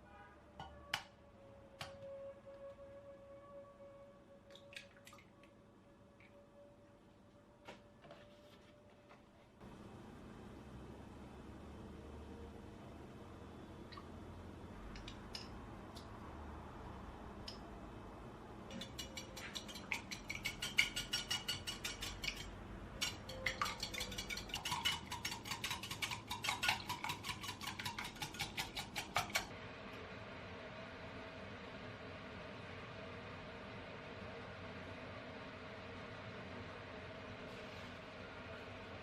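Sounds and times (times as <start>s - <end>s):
utensil beating against bowl: 18.7s - 29.5s.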